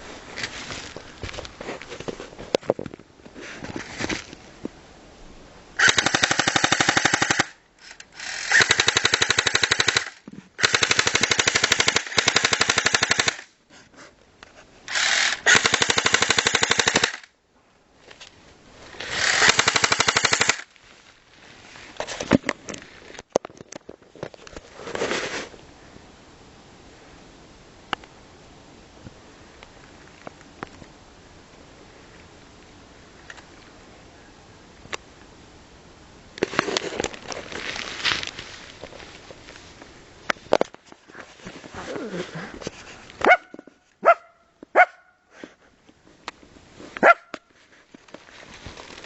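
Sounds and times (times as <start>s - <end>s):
airsoft gun firing bursts: 5.8s - 7.6s, 8.2s - 13.5s, 15.0s - 17.3s, 19.1s - 20.7s.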